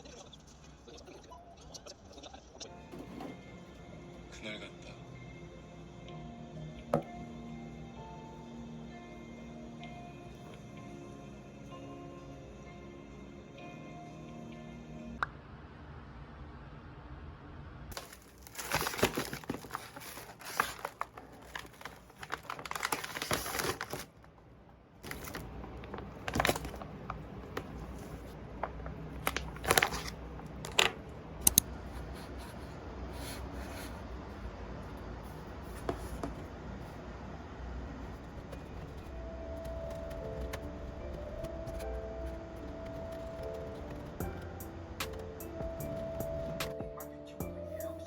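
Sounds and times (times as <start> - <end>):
wrapper crinkling and tearing: 17.9 - 24.2, 25.0 - 31.6.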